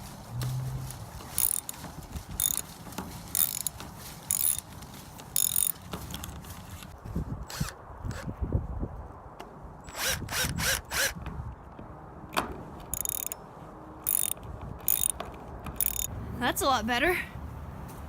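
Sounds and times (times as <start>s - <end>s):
hand tool rasping strokes: 0.0s - 5.9s, 14.1s - 14.3s, 14.9s - 15.1s, 15.8s - 16.1s.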